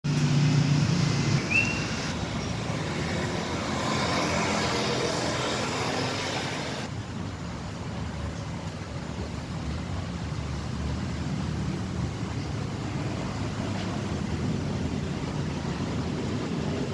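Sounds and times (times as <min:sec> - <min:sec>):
short high chirp: 0:01.5 - 0:02.0.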